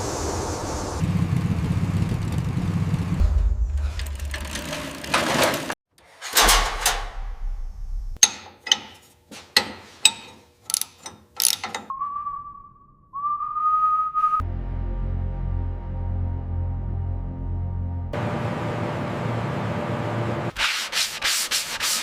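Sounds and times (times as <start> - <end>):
rush of noise: 0.0 - 1.0
metal tools clinking: 10.0 - 11.9
high whistle-like tone: 11.9 - 14.4.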